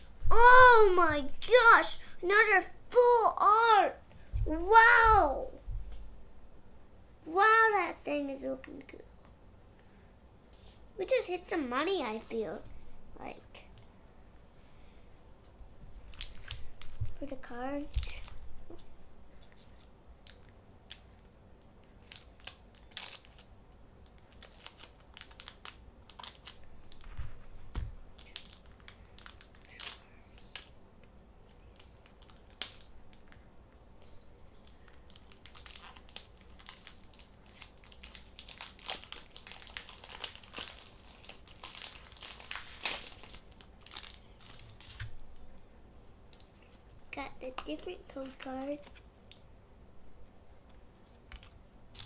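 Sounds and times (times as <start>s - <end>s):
trading cards being handled: 16.0s - 21.3s
foil wrapper crinkling and tearing: 16.0s - 30.8s, 31.4s - 33.4s, 34.6s - 45.4s.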